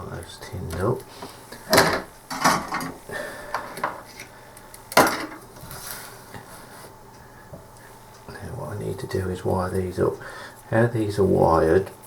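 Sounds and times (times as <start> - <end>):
tools clattering on a workbench: 1.7 - 3.0, 4.9 - 5.4.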